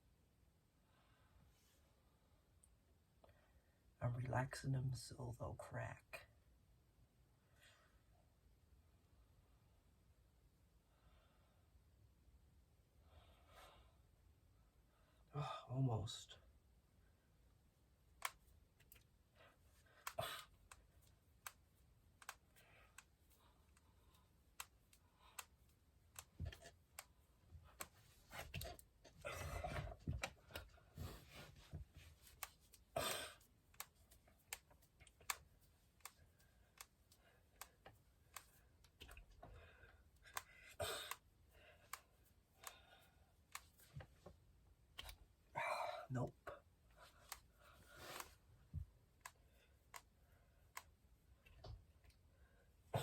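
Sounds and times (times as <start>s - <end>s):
knuckles cracking: 19.9s - 30.8s.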